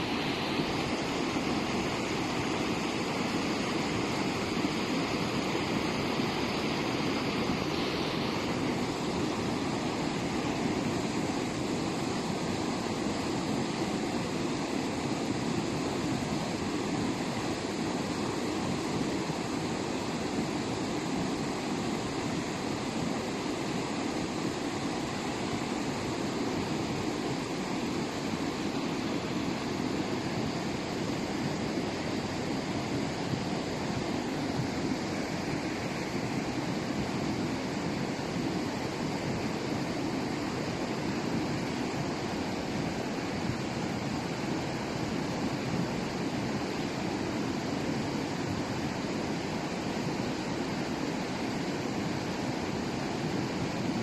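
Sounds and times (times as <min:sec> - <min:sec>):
high hiss: 0:00.0 - 0:54.0.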